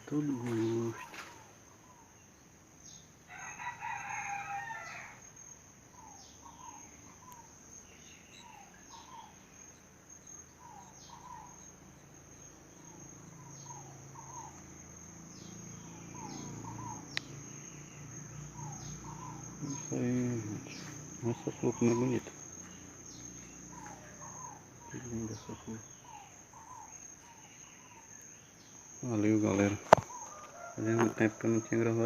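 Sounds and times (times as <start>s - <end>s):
crickets droning: 0.0s - 32.0s
rooster crowing: 3.3s - 5.3s, 30.1s - 32.0s.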